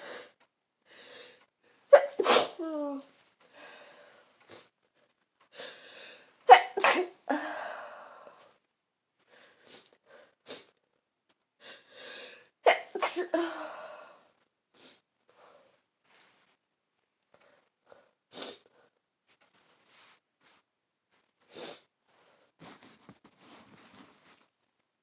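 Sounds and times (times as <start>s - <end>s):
person sneezing: 1.9s - 3.0s, 6.5s - 7.5s, 12.7s - 13.6s.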